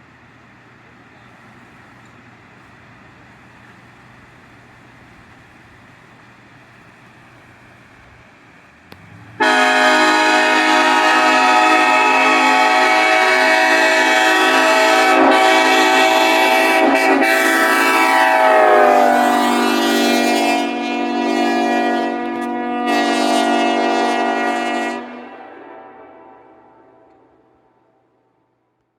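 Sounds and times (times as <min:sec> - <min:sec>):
locomotive air horn chord: 0:09.3 - 0:28.2.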